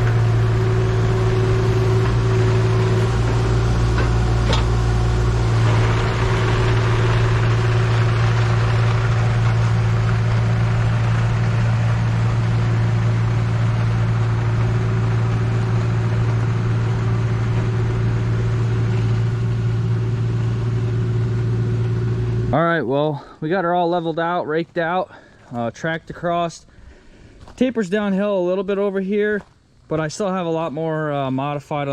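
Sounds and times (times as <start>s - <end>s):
earthmoving machine engine running: 0.0s - 23.4s.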